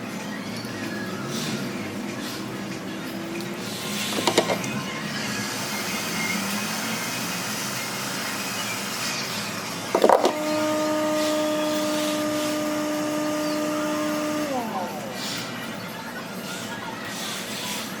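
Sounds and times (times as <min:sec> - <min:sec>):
small electric motor: 0:03.6 - 0:15.9
electric hum: 0:05.7 - 0:15.8
clicks: 0:10.0 - 0:15.4.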